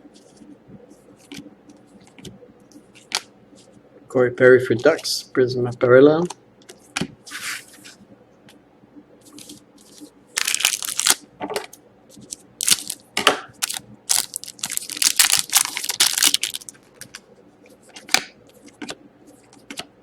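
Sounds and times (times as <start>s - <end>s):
cards being handled: 9.3s - 11.2s, 12.2s - 13.0s
foil wrapper crinkling and tearing: 10.4s - 11.2s, 12.3s - 13.0s, 13.6s - 17.2s.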